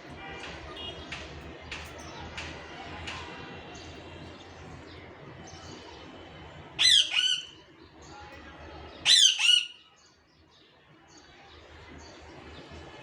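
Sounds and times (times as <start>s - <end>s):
parakeet squawking: 6.8s - 7.6s, 9.1s - 9.8s.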